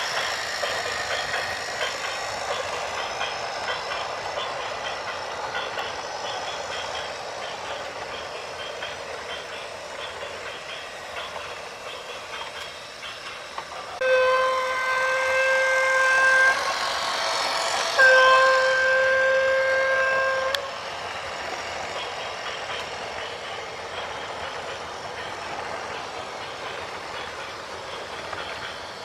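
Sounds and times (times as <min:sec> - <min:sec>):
vehicle horn blasts: 0:14.0 - 0:16.7, 0:18.0 - 0:20.6.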